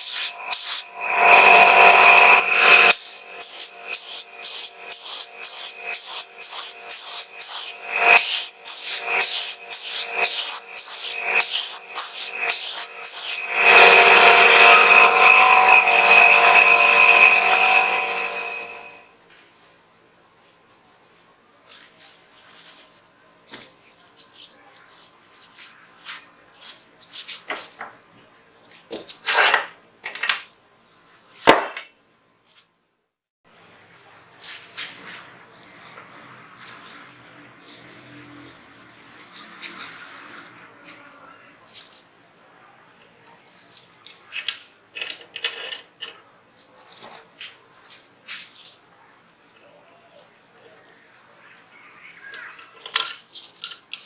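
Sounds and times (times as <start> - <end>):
rubbing strokes on metal: 0.0 - 18.8.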